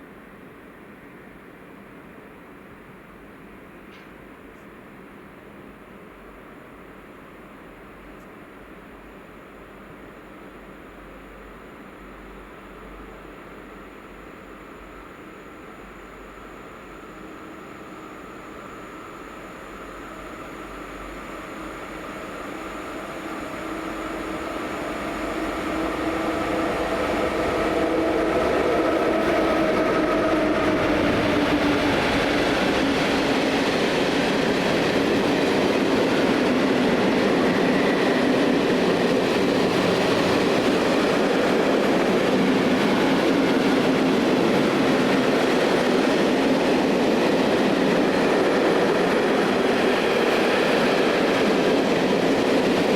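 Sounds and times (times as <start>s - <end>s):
freight train rumbling past: 16.6s - 52.9s.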